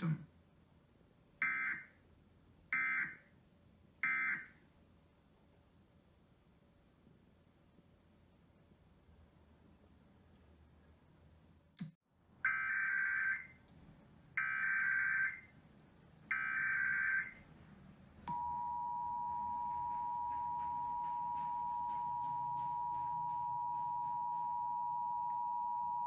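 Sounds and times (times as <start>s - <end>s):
two-tone attention signal: 18.3s - 26.0s.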